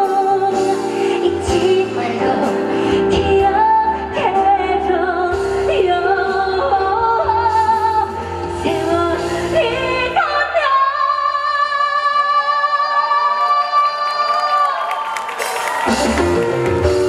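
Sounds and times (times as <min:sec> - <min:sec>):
woman singing: 0:00.0 - 0:14.9
band accompaniment: 0:15.3 - 0:17.0.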